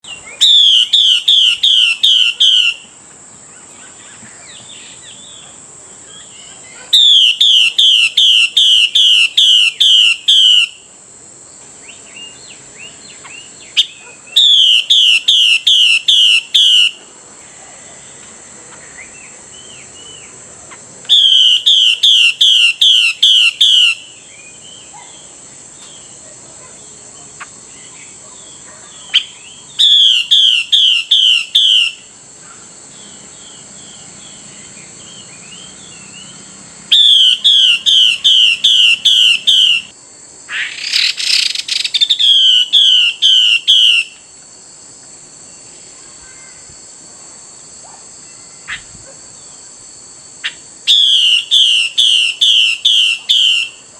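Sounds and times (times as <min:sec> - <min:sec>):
bird harsh calling phrase: 0:00.1 - 0:02.9, 0:06.1 - 0:10.8, 0:12.3 - 0:17.0, 0:19.6 - 0:25.3, 0:26.0 - 0:32.7, 0:36.9 - 0:39.9, 0:40.5 - 0:44.2, 0:50.9 - 0:53.8.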